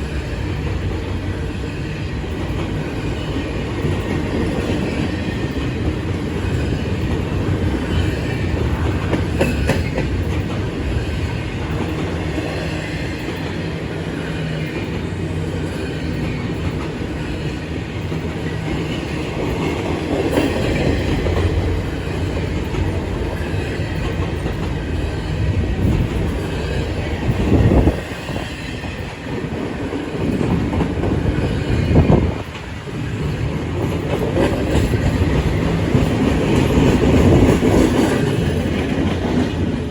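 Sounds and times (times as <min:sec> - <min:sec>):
train rumbling by: 0:00.0 - 0:39.9.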